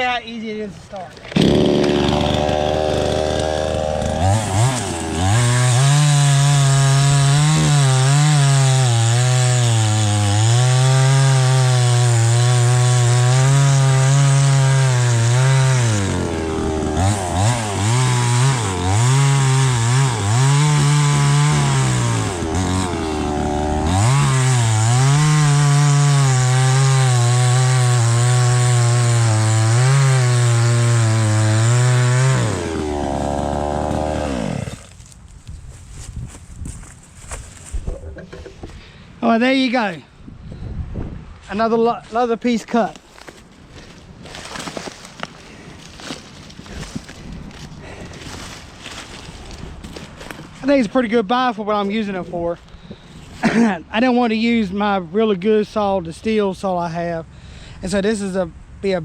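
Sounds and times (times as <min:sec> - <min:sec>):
chainsaw cutting log: 0:01.1 - 0:35.3, 0:42.9 - 0:50.8, 0:53.4 - 0:53.8.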